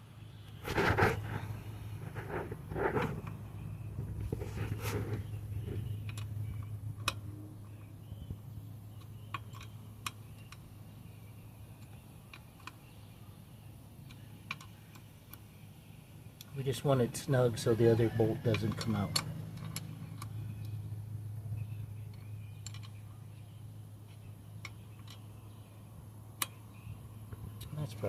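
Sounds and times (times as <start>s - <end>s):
steady low hum: 0.0s - 28.0s
wrench scraping: 0.6s - 3.4s, 18.3s - 20.3s.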